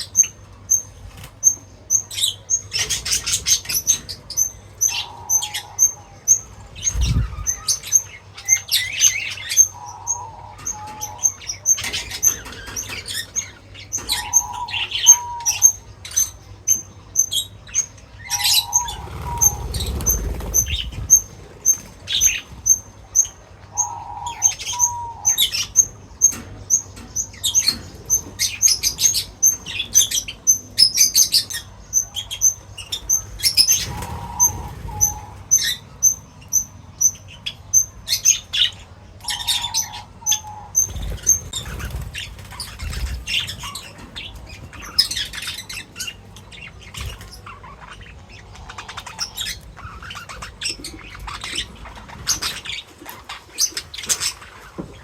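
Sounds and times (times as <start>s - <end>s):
small birds chirping: 0.0s - 55.0s
wings rustling and fluttering: 6.7s - 7.7s, 18.6s - 22.9s, 33.3s - 35.5s, 40.8s - 45.5s.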